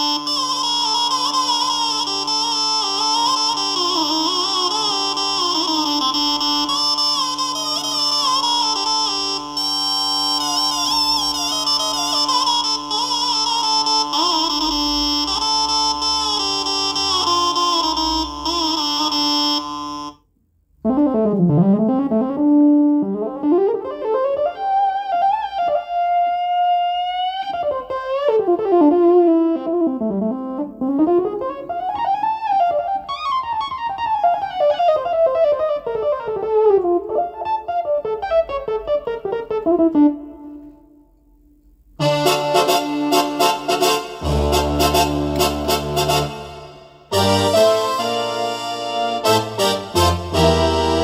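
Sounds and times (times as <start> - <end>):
held synthesizer chord: 42.0 - 51.0
keyboard plucked-string melody: 42.0 - 51.0.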